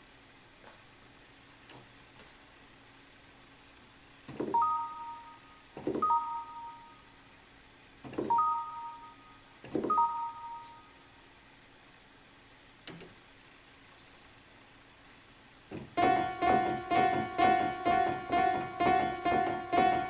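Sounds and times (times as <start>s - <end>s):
electronic keyboard two-note chime: 4.6s - 5.4s, 6.0s - 7.0s, 8.3s - 10.9s.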